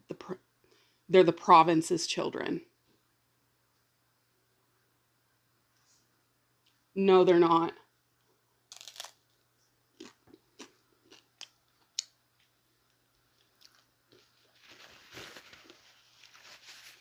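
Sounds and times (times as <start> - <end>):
person chewing food: 8.7 - 14.7.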